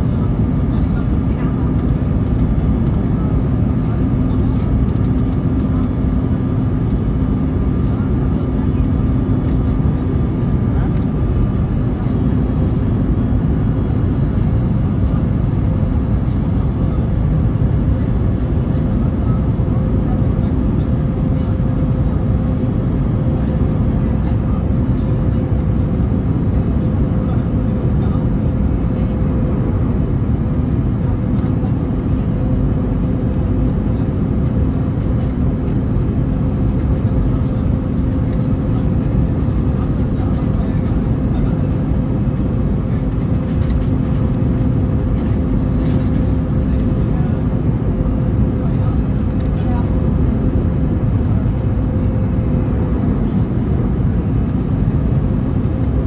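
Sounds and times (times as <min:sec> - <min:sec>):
engine rumble and rushing air: 0:00.0 - 0:56.0.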